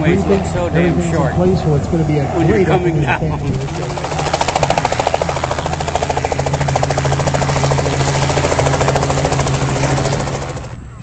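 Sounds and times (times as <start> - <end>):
aircraft engine running: 0.0 - 11.0.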